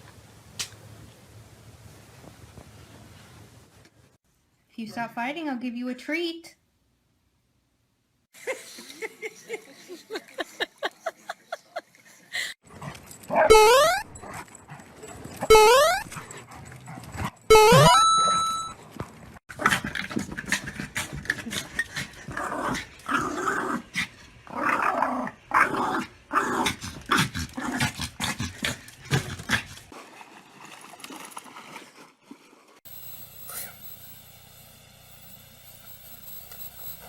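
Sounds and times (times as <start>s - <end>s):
rough dog noises with clicks: 12.7s - 13.4s, 16.1s - 17.5s, 26.6s - 29.9s
dog calling loudly: 13.4s - 14.2s.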